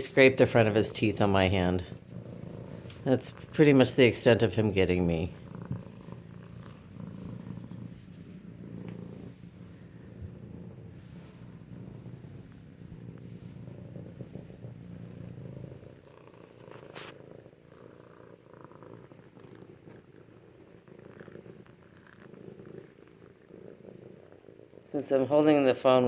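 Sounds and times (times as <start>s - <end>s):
kittens purring: 0.0s - 26.0s.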